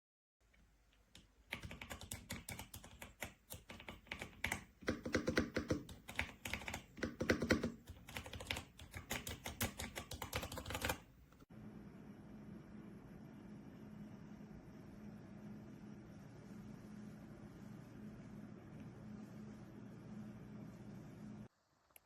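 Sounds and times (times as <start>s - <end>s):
fast mechanical keyboard typing: 1.2s - 11.1s.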